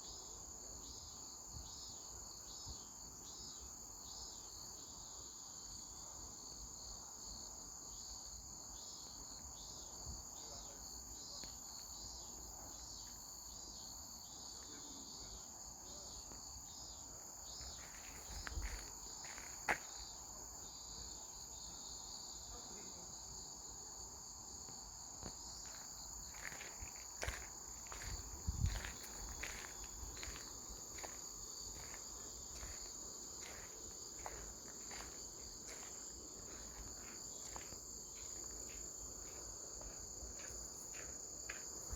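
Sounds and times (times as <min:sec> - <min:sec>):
crickets chirping: 0:00.0 - 0:41.9.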